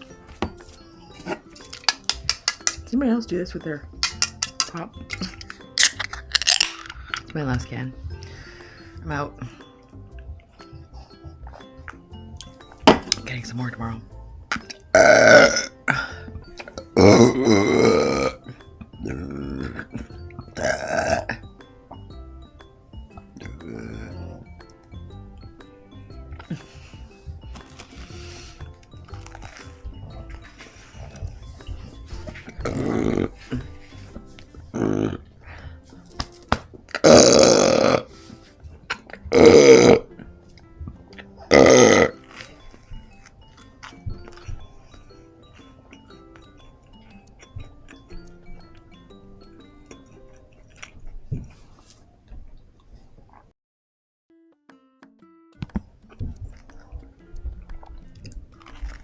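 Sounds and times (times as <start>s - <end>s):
person burping: 14.6s - 21.5s, 23.4s - 24.5s, 32.5s - 33.7s, 34.7s - 35.3s, 36.9s - 38.1s, 39.1s - 40.2s, 41.4s - 42.2s.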